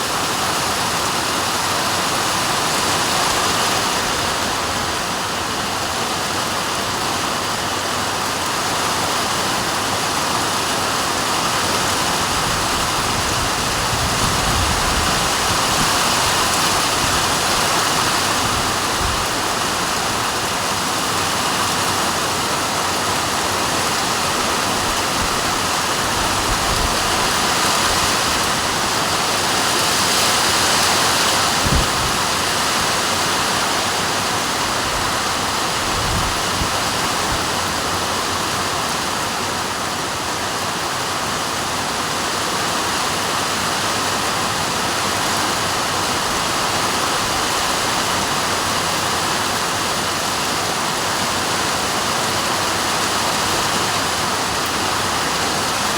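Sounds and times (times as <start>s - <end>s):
heavy rain pouring: 0.0s - 55.9s.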